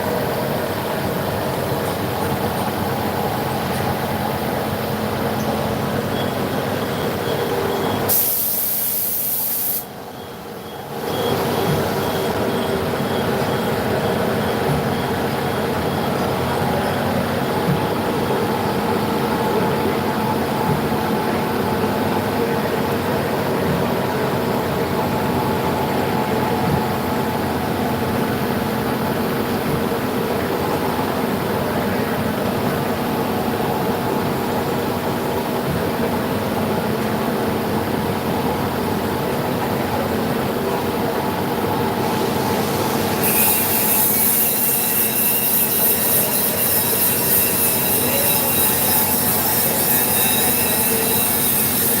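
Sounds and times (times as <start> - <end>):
loud high hiss: 8.1 - 9.9.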